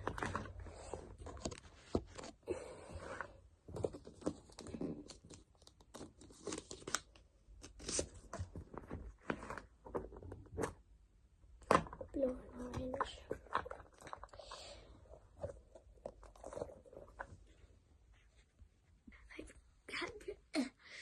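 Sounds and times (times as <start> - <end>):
plastic packets tearing and crinkling: 4.1 - 8.2.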